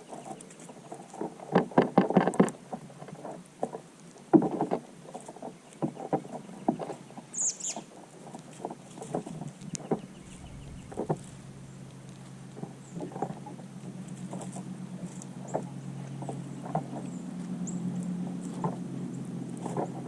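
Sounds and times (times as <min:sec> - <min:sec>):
soft knocks and rustling: 0:08.2 - 0:18.9.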